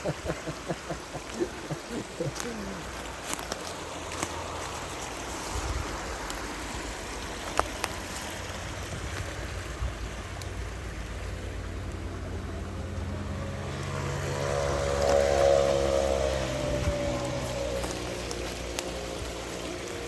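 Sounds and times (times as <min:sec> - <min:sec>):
mountain stream rushing: 0:00.0 - 0:20.0.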